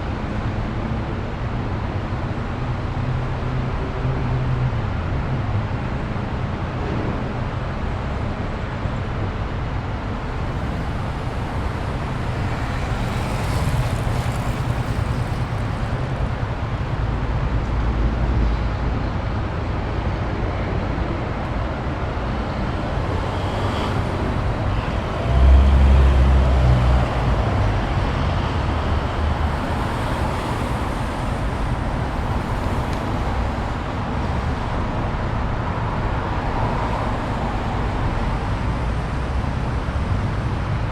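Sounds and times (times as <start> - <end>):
street traffic rumble: 0.0 - 40.9
heavy vehicle passing close: 9.8 - 17.5, 22.0 - 40.9.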